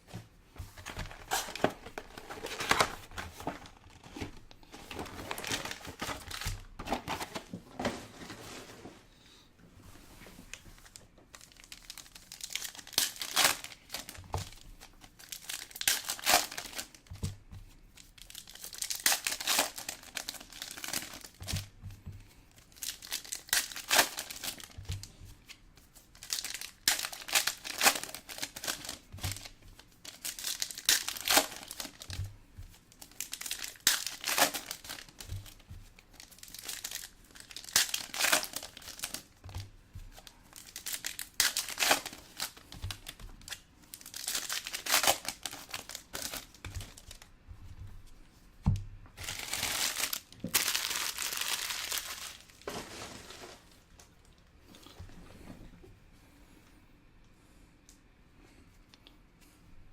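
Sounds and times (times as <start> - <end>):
foil wrappers tearing and crinkling: 0.9 - 7.5, 11.3 - 17.1, 18.1 - 21.6, 22.7 - 24.8, 26.2 - 32.2, 33.0 - 47.3, 49.2 - 53.8.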